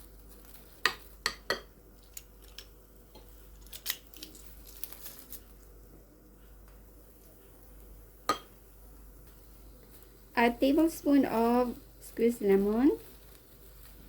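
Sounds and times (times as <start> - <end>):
utensil tapping a bowl: 0.8 - 1.7, 8.3 - 8.5.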